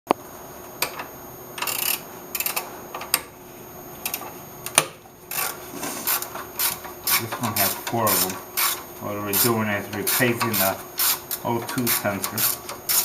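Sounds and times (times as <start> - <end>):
faint steady hum: 0.1 - 13.0
tools scraping on metal: 5.3 - 13.0
hand tools clicking on metal: 9.4 - 13.0.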